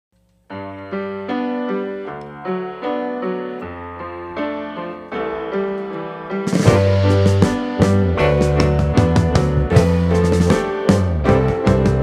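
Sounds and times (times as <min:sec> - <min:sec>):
keyboard playing sustained chords: 0:00.6 - 0:12.0
bass line: 0:06.5 - 0:12.0.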